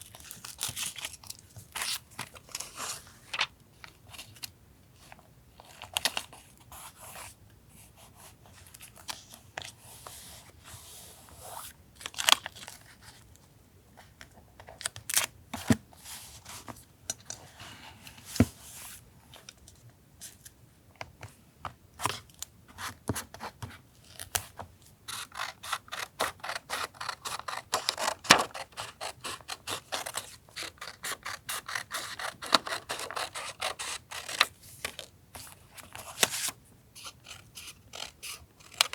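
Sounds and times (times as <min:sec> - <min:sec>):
scissors snipping paper: 0:25.1 - 0:34.5, 0:37.0 - 0:38.9.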